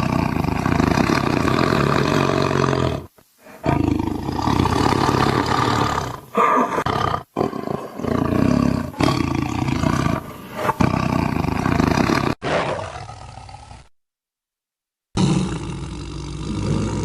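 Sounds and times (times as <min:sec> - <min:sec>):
tiger growling and roaring: 0:00.0 - 0:13.9, 0:15.2 - 0:17.0.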